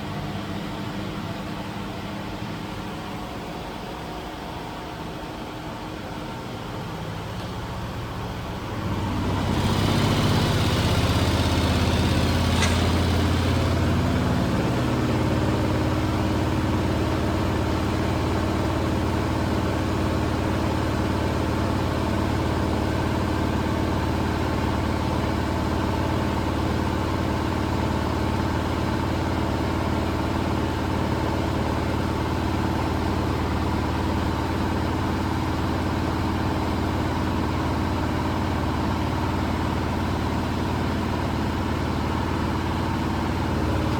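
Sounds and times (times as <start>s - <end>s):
washing machine spinning: 5.0s - 23.2s.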